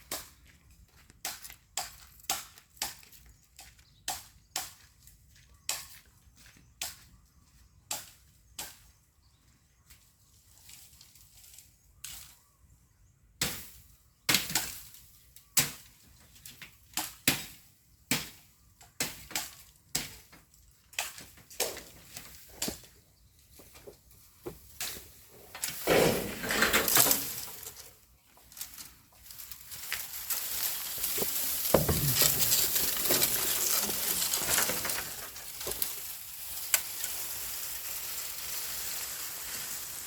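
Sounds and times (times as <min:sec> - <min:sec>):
rustling crashing noise: 0:24.4 - 0:40.0.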